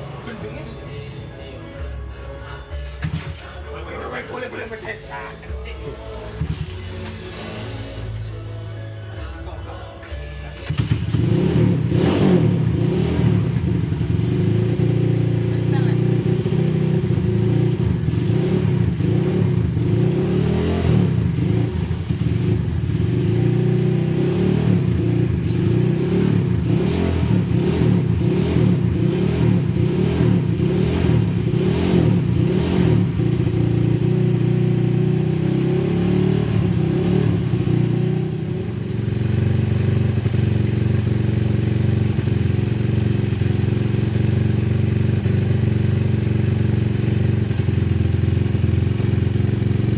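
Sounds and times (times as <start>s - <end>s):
motorcycle engine running: 10.6s - 49.9s.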